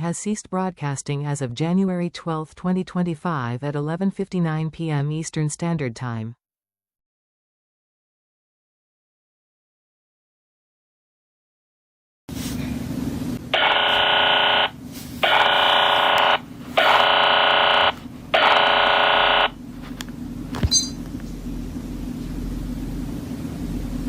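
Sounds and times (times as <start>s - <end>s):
steady low hum: 12.3s - 24.0s
electronic alert buzzer: 13.6s - 19.6s.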